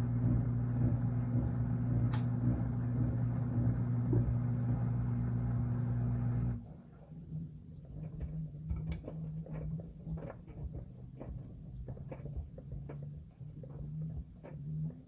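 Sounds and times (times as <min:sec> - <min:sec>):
washing machine motor hum: 0:00.0 - 0:15.0
faint drum clicks and rattles: 0:07.7 - 0:15.0.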